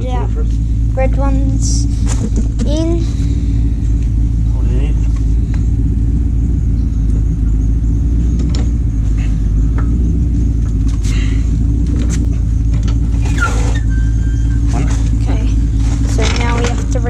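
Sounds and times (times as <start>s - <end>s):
low machine rumble: 0.0s - 17.0s
coil springs knocking and clinking: 11.8s - 14.0s.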